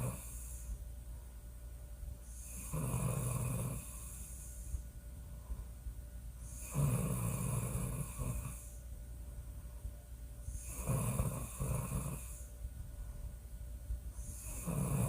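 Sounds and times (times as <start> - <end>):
woman snoring loudly: 0.0 - 0.6, 2.4 - 4.4, 6.5 - 8.7, 10.6 - 12.5, 14.2 - 15.0.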